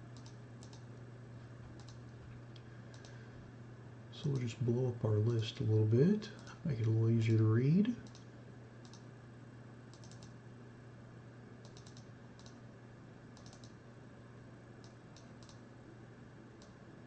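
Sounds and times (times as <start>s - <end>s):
steady low hum: 0.0s - 17.0s
keyboard and mouse clicks: 0.2s - 0.8s, 1.7s - 2.1s, 8.0s - 8.2s, 8.8s - 9.0s, 9.9s - 10.4s, 11.6s - 12.6s, 13.4s - 13.8s, 14.8s - 15.6s.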